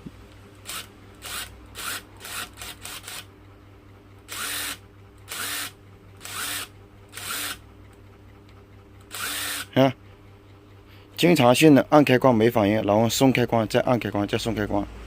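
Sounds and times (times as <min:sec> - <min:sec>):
cordless screwdriver motor spinning: 0:00.6 - 0:03.3, 0:04.3 - 0:07.6, 0:09.1 - 0:09.7.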